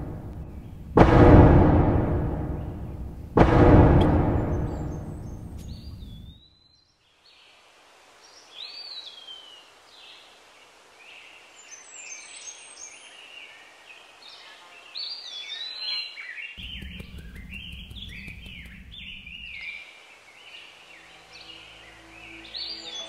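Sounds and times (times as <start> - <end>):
cannon-like boom: 0.0 - 6.3
low rumbling noise: 0.0 - 6.4, 16.6 - 19.7
birds chirping and singing: 4.3 - 7.0, 11.7 - 23.0
faint hiss: 7.0 - 23.0.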